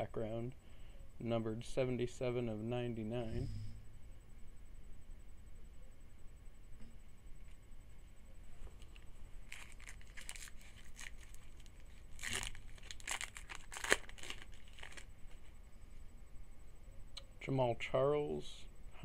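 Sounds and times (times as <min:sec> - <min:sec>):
card pack wrapper tearing: 0:08.9 - 0:15.1.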